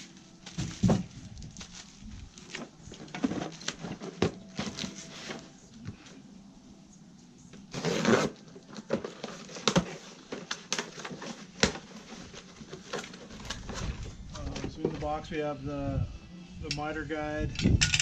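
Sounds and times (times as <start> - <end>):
cardboard and packing rustling: 0.0 - 6.2, 7.6 - 15.2.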